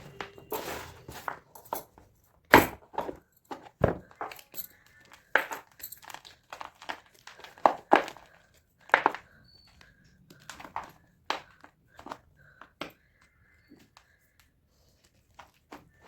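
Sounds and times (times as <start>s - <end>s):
chalk blocks crunching: 3.0s - 13.1s.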